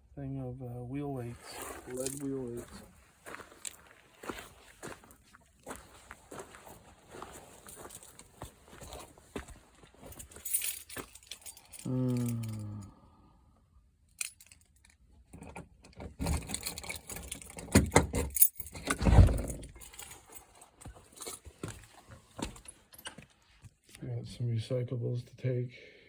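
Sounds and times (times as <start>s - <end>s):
scrap metal clinking and rattling: 7.1s - 12.8s, 14.2s - 23.3s.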